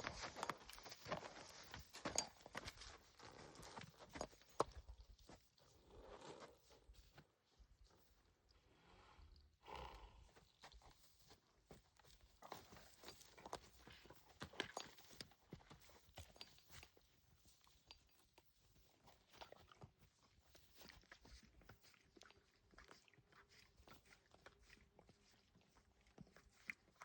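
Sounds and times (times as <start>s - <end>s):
horses knocking and crunching: 0.0s - 7.2s, 10.6s - 18.3s.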